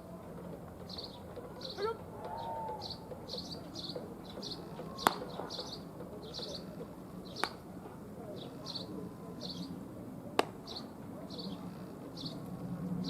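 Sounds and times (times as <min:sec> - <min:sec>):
baseball popping into a mitt: 0:05.0 - 0:05.4, 0:10.4 - 0:10.6.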